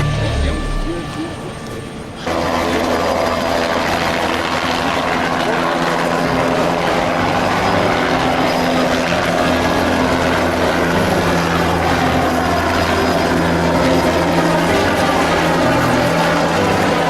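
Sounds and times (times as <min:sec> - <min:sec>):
helicopter engine and rotor drone: 0:00.0 - 0:17.0.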